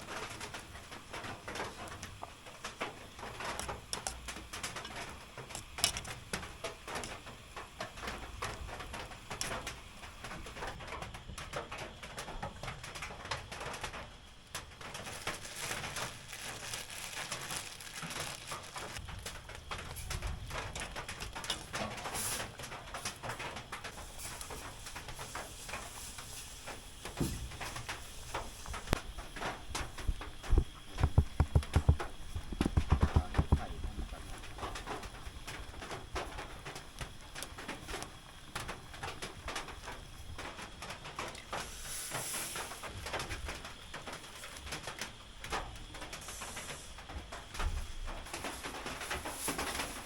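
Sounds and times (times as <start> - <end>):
small ticks and drips: 27.6 - 49.5.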